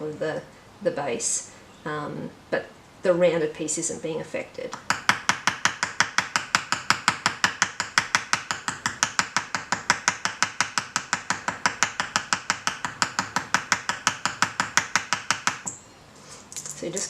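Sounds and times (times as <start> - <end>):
small hammer tapping metal: 4.7 - 15.8.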